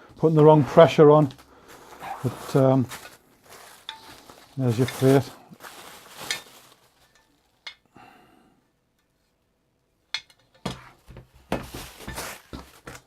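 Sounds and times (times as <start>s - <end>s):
packaging rustling: 0.0s - 7.7s, 11.6s - 13.0s
knocks and clinks of parts: 2.9s - 5.4s, 10.1s - 13.0s.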